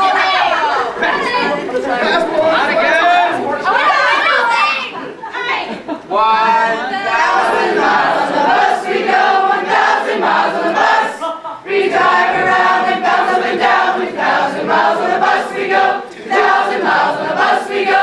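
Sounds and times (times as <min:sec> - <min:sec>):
large group singing loudly: 0:06.5 - 0:18.0.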